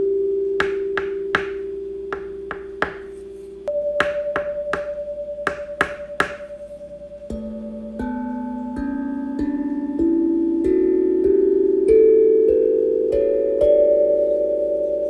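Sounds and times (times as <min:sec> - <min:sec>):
bell-like notes rising in pitch: 0:03.7 - 0:15.0.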